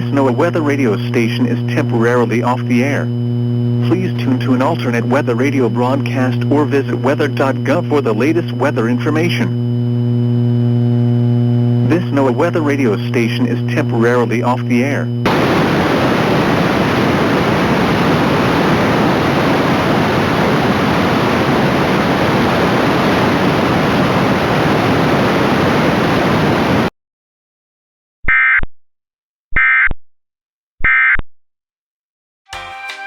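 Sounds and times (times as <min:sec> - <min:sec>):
radio static: 0:00.0 - 0:26.9
electronic data bursts: 0:03.8 - 0:09.6.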